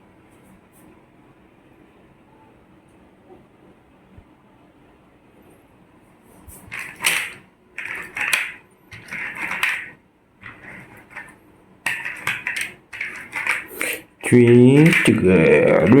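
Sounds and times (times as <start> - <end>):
toys clattering and rattling: 6.6 - 16.0.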